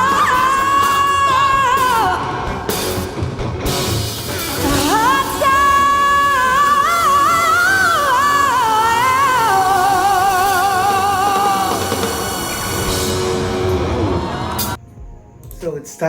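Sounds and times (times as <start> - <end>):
rock band playing: 0.0 - 14.8
woman singing high notes: 4.6 - 11.9.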